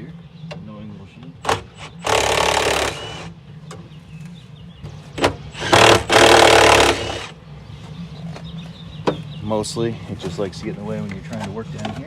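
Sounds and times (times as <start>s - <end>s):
power tool running: 1.4s - 3.3s, 5.2s - 7.4s.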